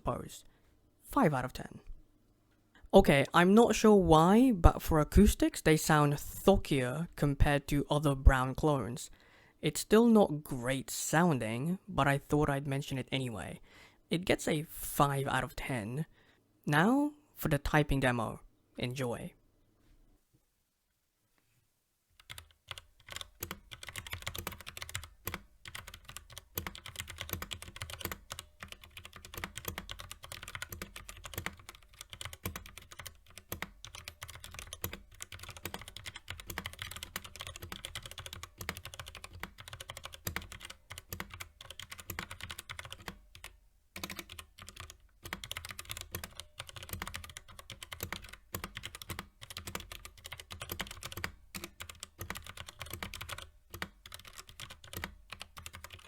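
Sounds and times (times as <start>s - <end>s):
typing on mechanical keyboard: 22.2s - 56.0s.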